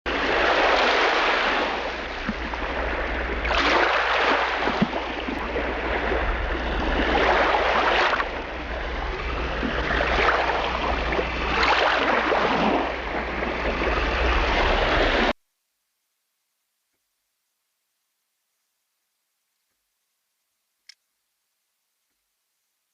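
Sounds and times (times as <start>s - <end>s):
water splashing around kayak: 0.1s - 15.4s
wind rumble on microphone: 0.1s - 15.4s.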